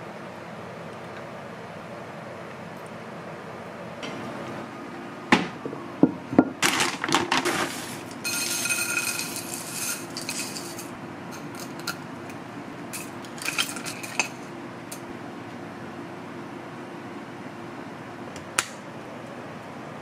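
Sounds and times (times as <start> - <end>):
dishes and utensils clattering: 6.6 - 12.0, 13.0 - 14.5.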